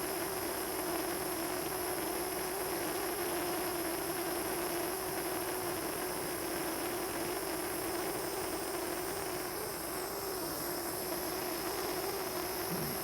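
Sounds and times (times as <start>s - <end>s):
gas torch flame hissing: 5.7s - 13.0s.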